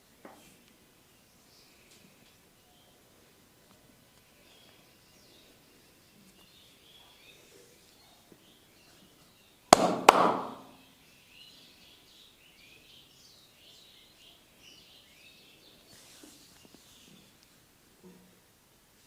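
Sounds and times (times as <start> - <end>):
faint bird chirping: 0.4 - 9.7, 10.5 - 18.4
percussive massage smacks: 9.7 - 10.7.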